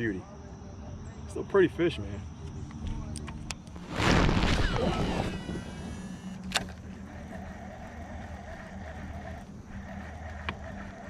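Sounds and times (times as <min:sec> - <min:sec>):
small boat motor humming: 0:04.8 - 0:11.0.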